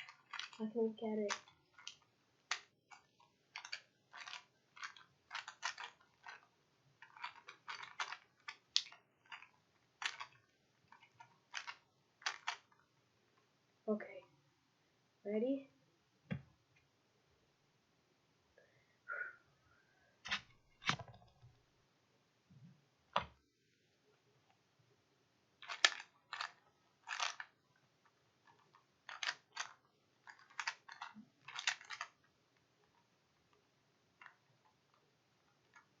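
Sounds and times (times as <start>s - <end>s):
plastic puzzle cube layers clicking: 0.0s - 13.5s, 20.2s - 21.5s, 25.6s - 36.0s.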